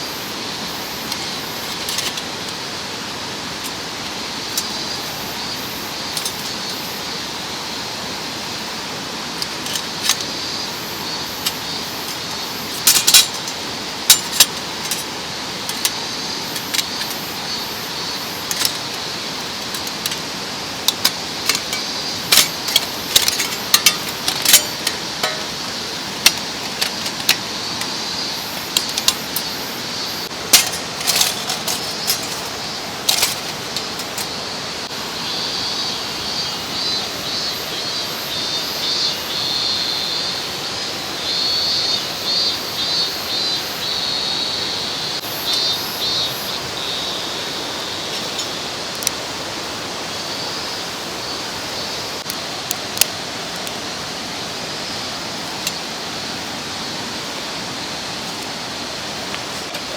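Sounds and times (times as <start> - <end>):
insect chirring: 0.0 - 59.9
mountain stream rushing: 0.0 - 59.9
light metallic clinks: 5.9 - 7.0, 8.5 - 34.9.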